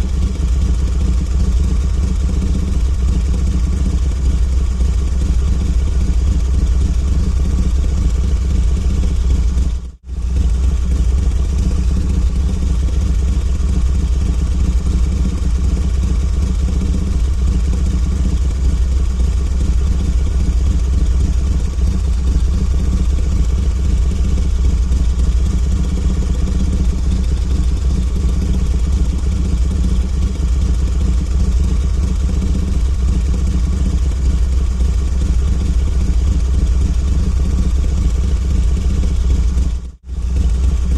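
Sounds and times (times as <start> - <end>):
motorcycle engine idling: 0.0 - 40.9.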